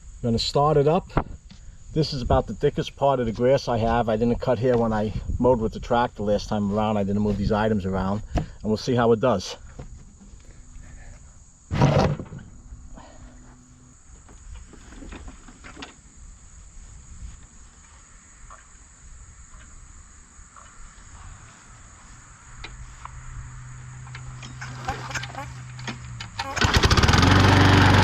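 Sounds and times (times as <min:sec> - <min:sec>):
crickets chirping: 0:00.0 - 0:27.0
lawn mower engine running: 0:23.9 - 0:28.0.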